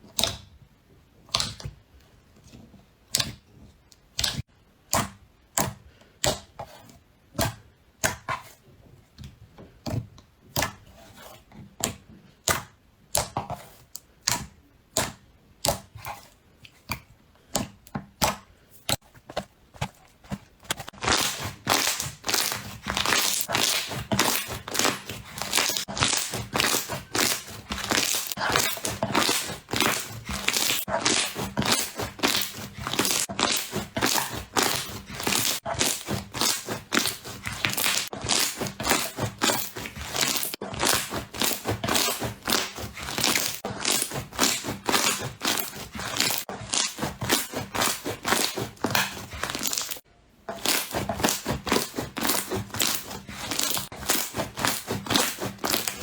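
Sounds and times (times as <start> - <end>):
slime crackling and popping: 20.7 - 50.0, 50.6 - 56.0.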